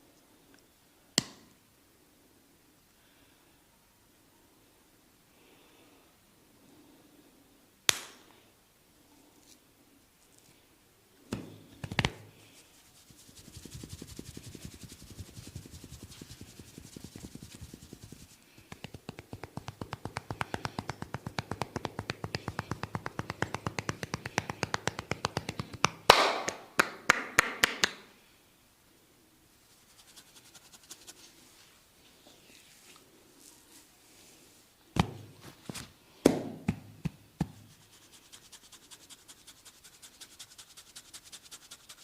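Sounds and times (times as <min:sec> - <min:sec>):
hands slapping skin: 0:07.9 - 0:08.2, 0:11.3 - 0:12.3, 0:13.4 - 0:28.0, 0:36.3 - 0:37.8
rhythmic hand tapping: 0:13.2 - 0:27.9.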